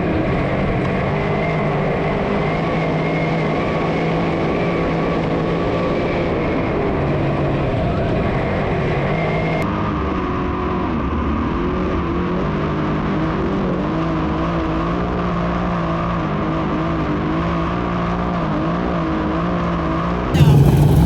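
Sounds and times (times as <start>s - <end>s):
race car engines running: 20.4s - 21.0s.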